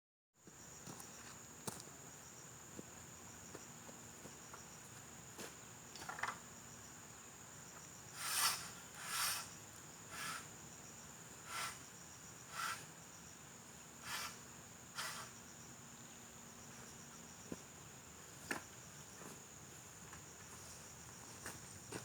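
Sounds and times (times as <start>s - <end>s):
short hissing rasps: 8.0s - 10.6s, 11.3s - 13.1s, 14.0s - 15.5s
high-pitched insect drone: 8.0s - 13.4s, 14.0s - 15.7s.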